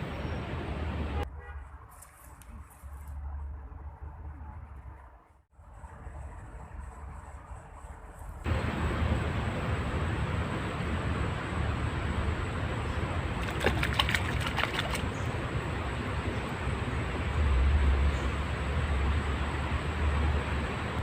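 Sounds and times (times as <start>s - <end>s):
water trickling and sloshing: 13.3s - 15.4s.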